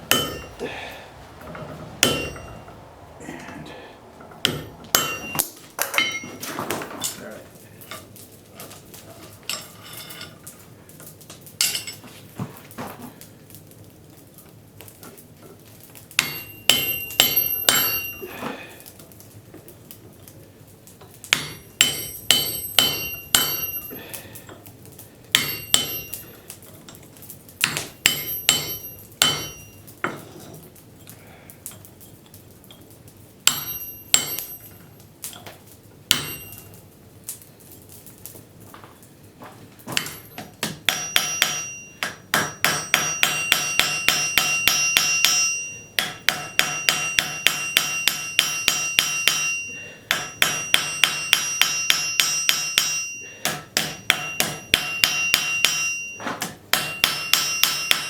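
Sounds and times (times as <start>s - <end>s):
hammer striking metal with ringing: 0.0s - 0.7s, 1.5s - 2.8s, 4.2s - 6.4s, 16.2s - 18.4s, 21.3s - 24.1s, 25.3s - 26.4s, 27.6s - 29.9s, 33.4s - 34.8s, 36.1s - 36.8s, 40.0s - 58.0s.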